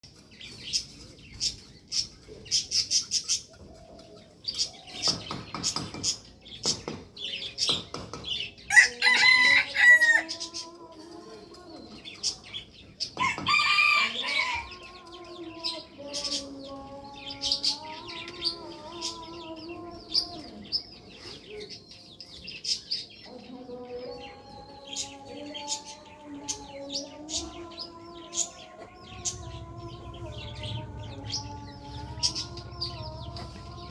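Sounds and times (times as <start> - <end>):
chicks chirping and clucking: 0.0 - 33.9
roosters crowing: 8.6 - 10.6, 13.1 - 16.3, 24.2 - 33.9.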